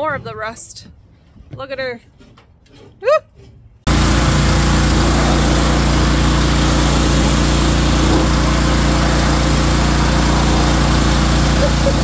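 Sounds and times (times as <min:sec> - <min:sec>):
pressure washer motor humming: 0:03.9 - 0:12.0
water jet hissing: 0:03.9 - 0:12.0.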